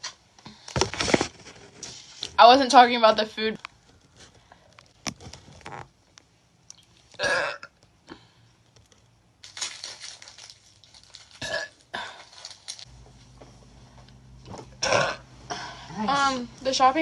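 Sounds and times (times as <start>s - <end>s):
woman burping loudly: 7.2s - 7.8s, 11.4s - 12.1s, 14.8s - 15.7s.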